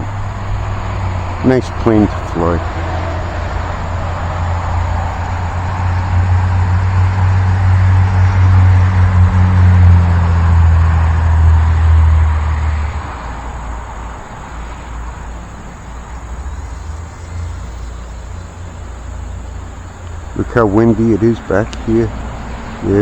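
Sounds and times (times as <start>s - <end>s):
wind buffeting microphone: 0.0s - 23.0s.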